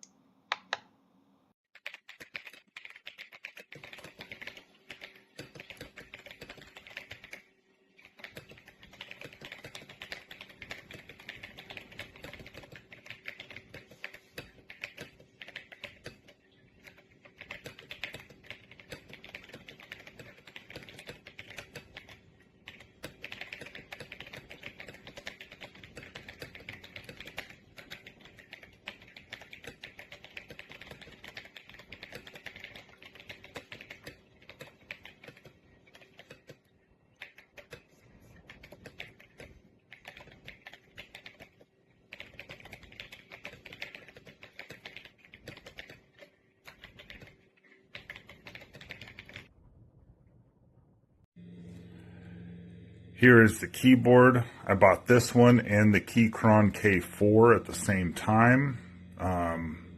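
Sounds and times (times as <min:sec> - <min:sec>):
fast typing on mechanical keyboard: 0:01.8 - 0:49.5.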